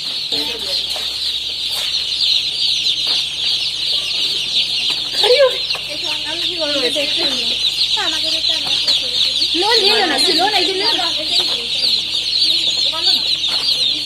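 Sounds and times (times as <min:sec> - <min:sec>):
chicks peeping: 0:00.0 - 0:14.0
muffled human voices: 0:00.3 - 0:01.2, 0:03.7 - 0:14.0.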